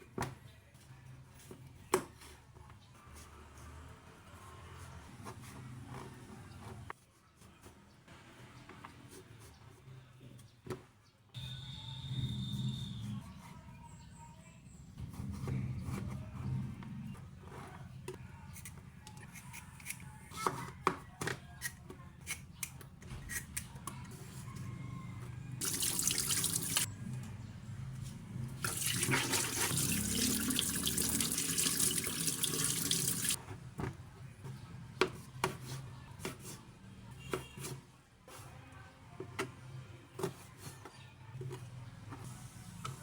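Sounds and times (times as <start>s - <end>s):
tap water running into sink: 25.6s - 26.9s, 28.6s - 33.4s.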